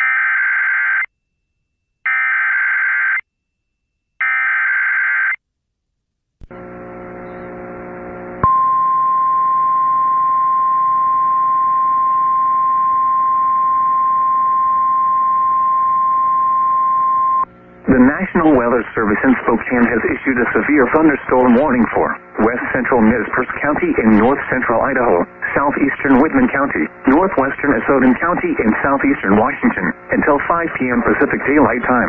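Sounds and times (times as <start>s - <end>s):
buzzing hum: 6.4s - 32.0s
single-pitch warning alarm tone: 8.4s - 17.5s.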